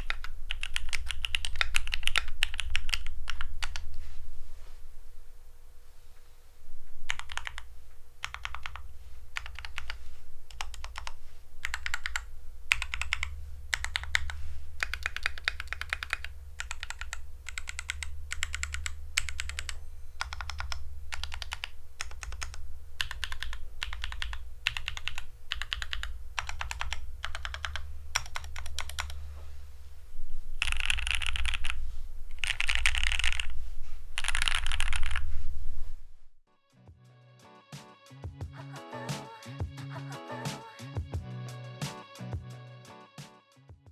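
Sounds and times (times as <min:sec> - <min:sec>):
mechanical keyboard typing: 0:00.0 - 0:03.9, 0:07.1 - 0:29.2, 0:30.6 - 0:33.6, 0:34.2 - 0:35.3
steady low hum: 0:00.0 - 0:36.4.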